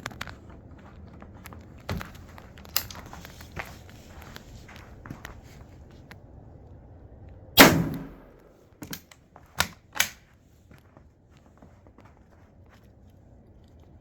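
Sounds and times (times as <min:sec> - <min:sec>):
rifle shot: 0:07.6 - 0:08.5
sharp metallic clicks: 0:07.6 - 0:10.2.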